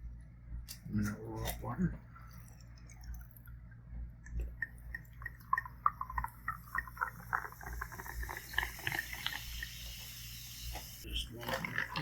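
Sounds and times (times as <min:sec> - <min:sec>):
water poured over ice: 0:10.7 - 0:12.0.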